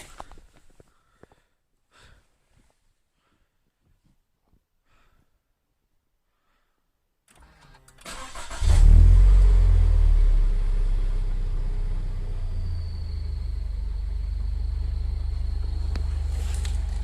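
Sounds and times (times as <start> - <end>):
engine starter cranking: 7.3 - 8.9
engine revving then idling: 8.3 - 17.0.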